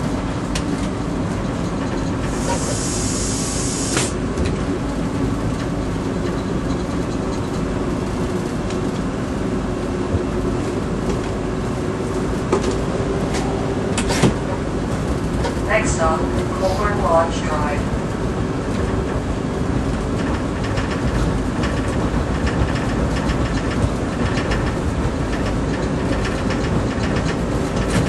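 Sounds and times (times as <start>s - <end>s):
streetcar wheels and motors rumbling: 0.0s - 28.0s
hiss: 2.3s - 4.2s.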